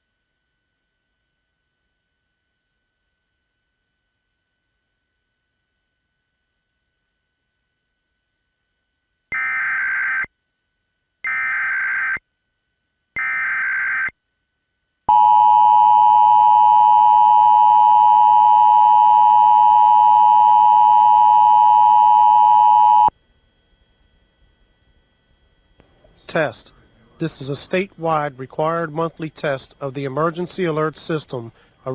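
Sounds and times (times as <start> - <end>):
data tone bursts: 15.1 - 23.1, 26.2 - 31.2
two-tone attention signal: 15.1 - 23.1.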